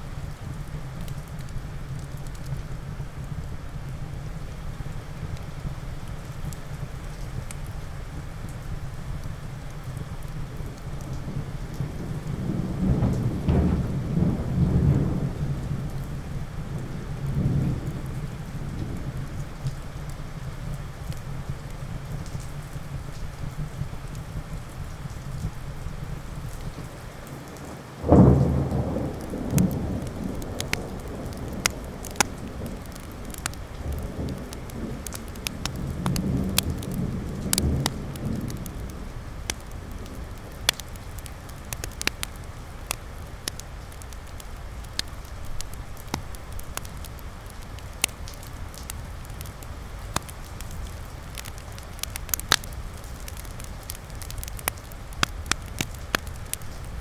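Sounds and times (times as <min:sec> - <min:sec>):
steady rain: 0:00.0 - 0:57.0
thunder rumbling: 0:08.2 - 0:22.1, 0:23.4 - 0:57.0
wood fire crackling: 0:25.5 - 0:57.0.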